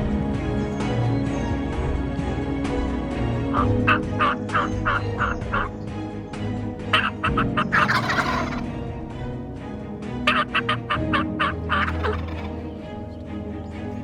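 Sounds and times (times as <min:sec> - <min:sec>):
turkey gobbling: 0:03.5 - 0:05.8, 0:06.9 - 0:08.8, 0:10.2 - 0:12.6.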